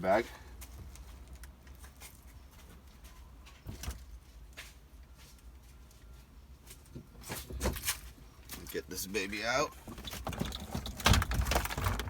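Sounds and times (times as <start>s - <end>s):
plastic dashboard knocks and scrapes: 9.9s - 12.0s.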